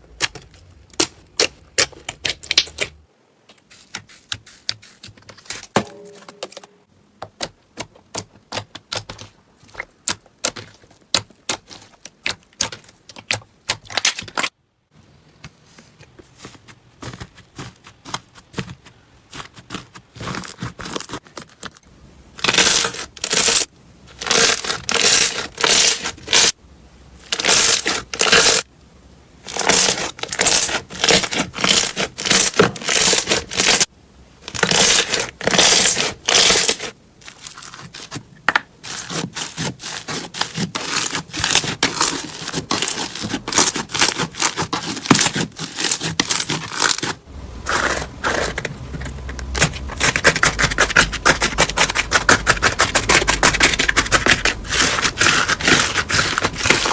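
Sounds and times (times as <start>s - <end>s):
slime crackling and popping: 0.1s - 3.0s, 38.9s - 56.9s.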